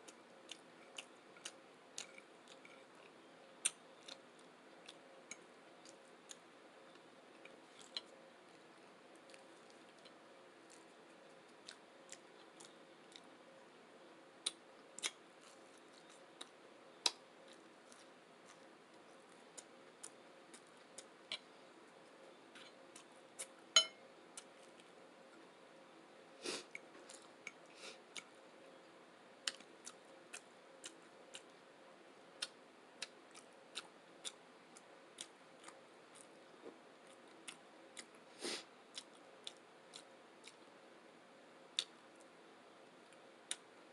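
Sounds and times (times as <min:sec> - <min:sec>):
faint steady hum: 0:00.0 - 0:43.9
wet mouth chewing: 0:38.9 - 0:40.6.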